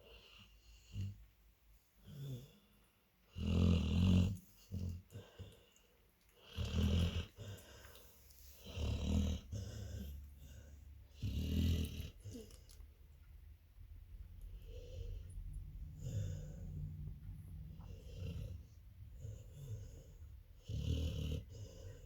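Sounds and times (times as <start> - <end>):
dog snoring: 3.3 - 5.2, 6.5 - 7.6, 8.6 - 12.5, 14.6 - 22.0.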